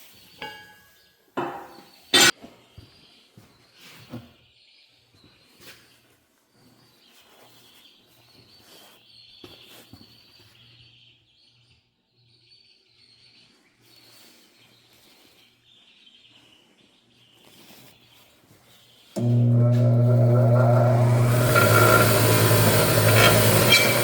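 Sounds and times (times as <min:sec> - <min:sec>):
power tool humming and whining: 0:19.2 - 0:24.0.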